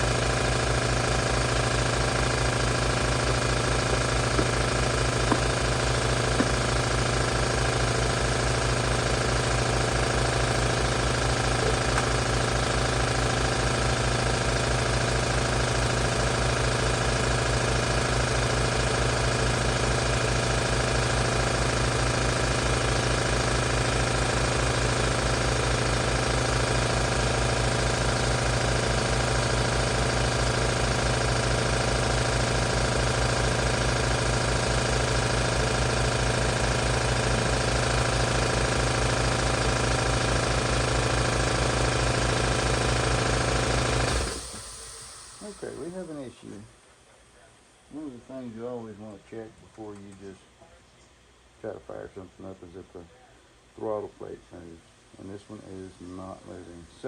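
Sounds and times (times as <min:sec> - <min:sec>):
air compressor running: 0:00.0 - 0:49.1.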